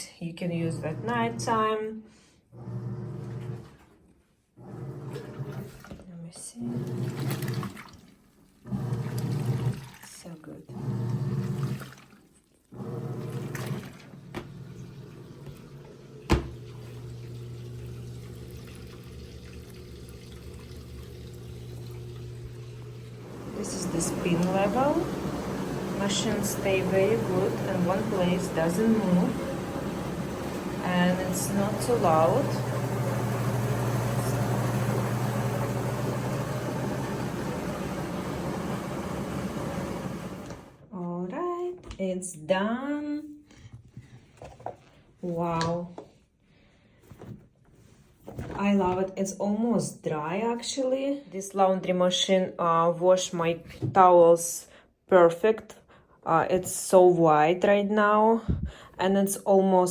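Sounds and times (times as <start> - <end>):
washing machine motor hum: 0.5 - 1.6, 2.5 - 4.0, 4.6 - 40.9
water swishing in tub: 4.6 - 40.8.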